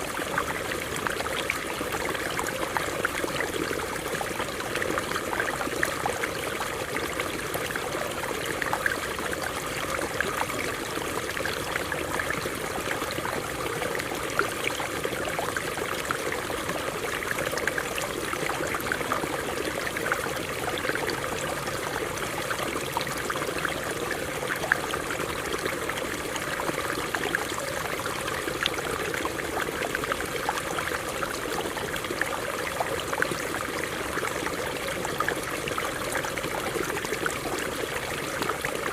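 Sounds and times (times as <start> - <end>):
stream water running over rocks: 0.0 - 38.9.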